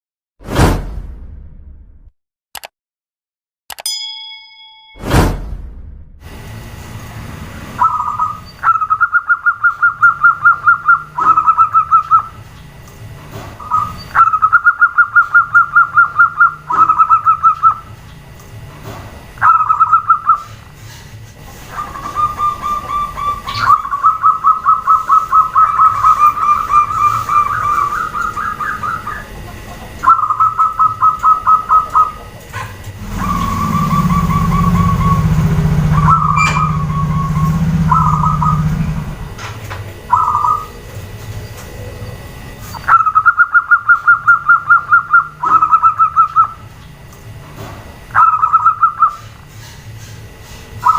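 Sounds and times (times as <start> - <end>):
steady low hum: 5.0 - 50.9
doves calling in trilled notes: 7.8 - 12.4, 13.6 - 18.0, 19.4 - 20.6, 21.6 - 39.1, 40.0 - 46.8, 48.1 - 49.4.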